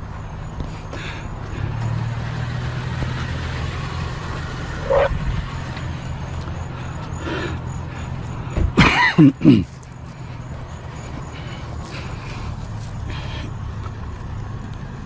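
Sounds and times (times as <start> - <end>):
truck engine humming: 0.0 - 15.0
short rising squeak: 4.6 - 5.6.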